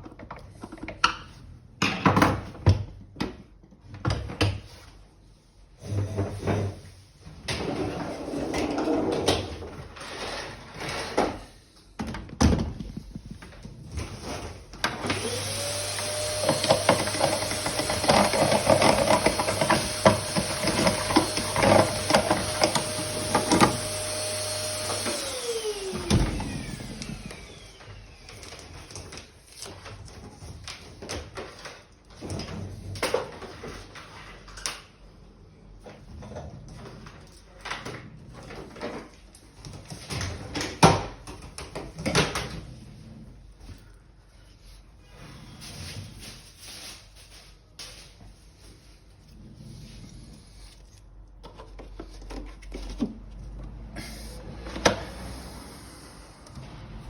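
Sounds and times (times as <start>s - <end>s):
vacuum cleaner parts clicking: 14.8s - 29.2s.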